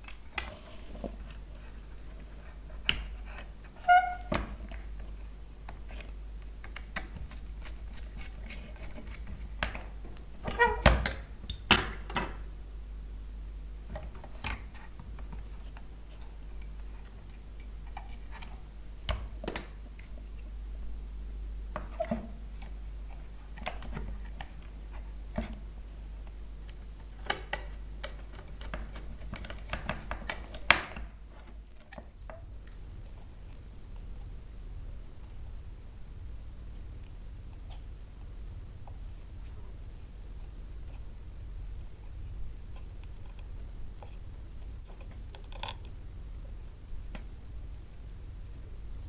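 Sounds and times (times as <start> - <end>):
faint low hum: 0.0 - 49.0.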